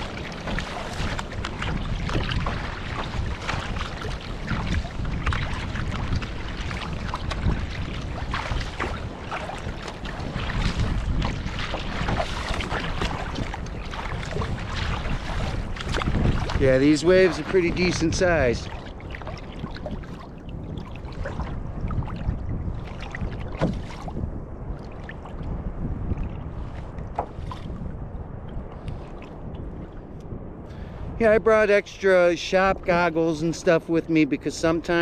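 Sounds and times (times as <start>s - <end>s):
water splashing around kayak: 0.0s - 35.0s
wind buffeting microphone: 0.0s - 35.0s.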